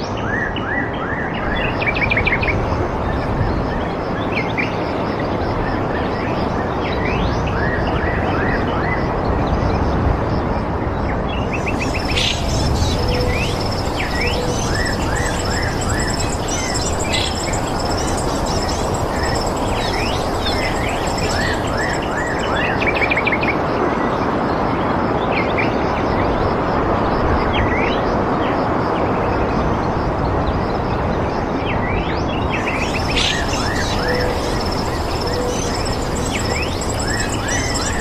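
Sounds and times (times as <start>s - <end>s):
birds chirping and calling: 11.6s - 22.7s, 32.6s - 38.0s
high rapid trill: 11.6s - 22.7s, 32.6s - 38.0s.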